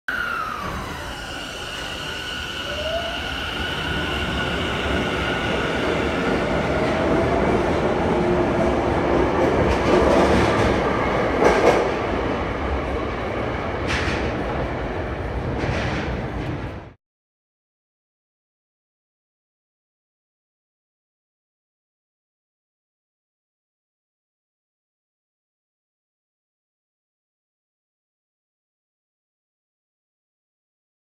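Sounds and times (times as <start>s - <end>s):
electric train motor whine: 0.1s - 5.8s
rumble of train wheels: 0.2s - 17.0s.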